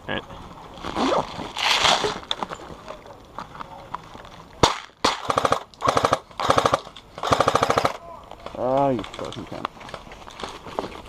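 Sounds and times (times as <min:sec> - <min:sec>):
airsoft gun single cracks: 0:04.6 - 0:08.0
airsoft gun full-auto bursts: 0:05.0 - 0:08.0.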